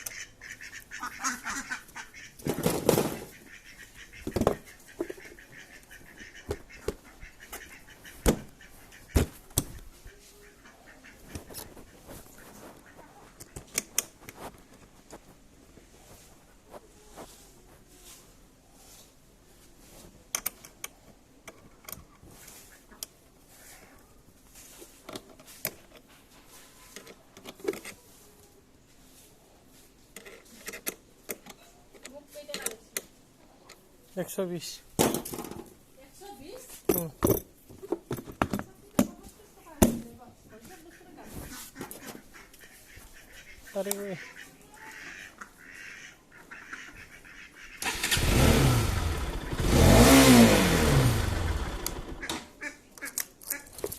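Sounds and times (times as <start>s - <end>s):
motorcycle engine starting and revving: 47.8s - 52.5s.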